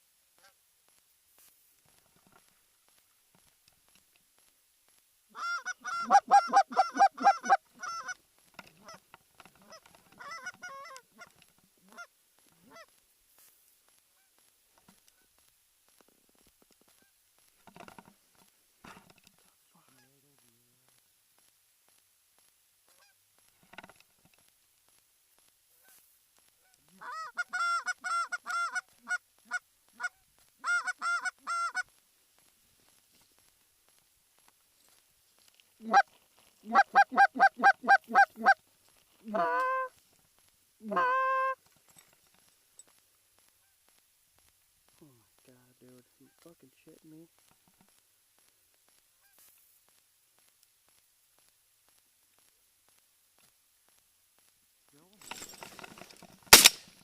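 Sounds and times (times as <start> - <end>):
goose honking: 5.3 - 8.2, 8.8 - 9.0, 9.6 - 13.0, 26.6 - 31.9, 35.8 - 38.6, 39.2 - 40.0, 40.8 - 41.6
goose clucks: 5.3 - 13.0, 22.9 - 24.0, 26.6 - 32.0, 35.8 - 38.6, 39.2 - 40.0, 40.8 - 41.6, 49.2 - 49.5.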